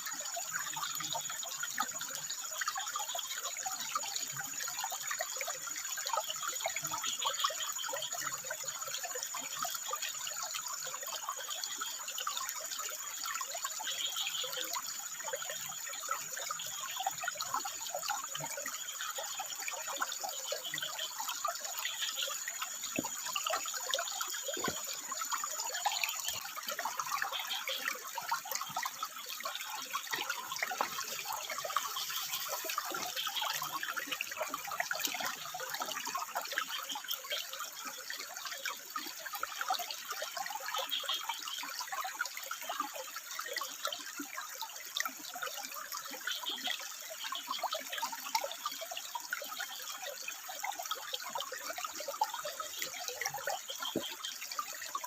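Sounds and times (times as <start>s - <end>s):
stream water splashing over rocks: 0.0s - 55.0s
frogs calling: 13.8s - 38.9s, 40.2s - 41.9s, 51.8s - 54.7s.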